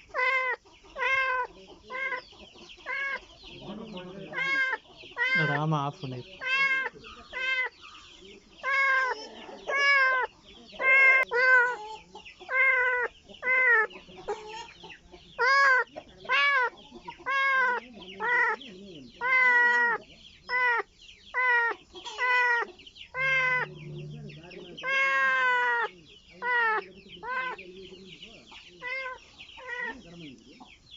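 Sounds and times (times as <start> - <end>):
kitten meowing: 4.3 - 5.6, 6.4 - 7.7, 8.6 - 11.8, 23.2 - 24.2, 24.8 - 25.8.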